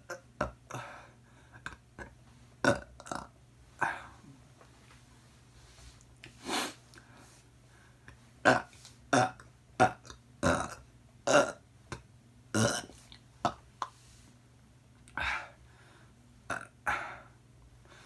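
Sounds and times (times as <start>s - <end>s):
person burping: 1.6s - 4.1s, 8.5s - 11.6s, 12.6s - 13.6s, 16.5s - 17.1s.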